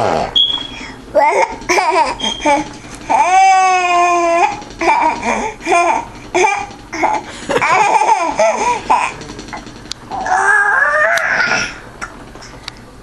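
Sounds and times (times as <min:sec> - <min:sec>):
child giggling: 0:07.0 - 0:09.3
young child squealing: 0:10.2 - 0:11.8.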